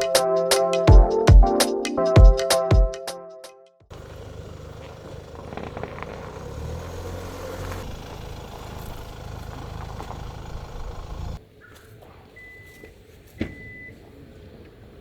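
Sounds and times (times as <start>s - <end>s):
vehicle engine rumbling: 3.9s - 11.4s.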